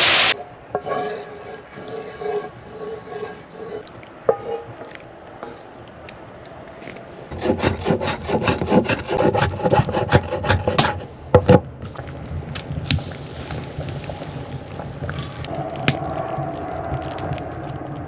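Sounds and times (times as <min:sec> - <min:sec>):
scraping strokes on wood: 0:00.3 - 0:04.8, 0:07.3 - 0:11.1.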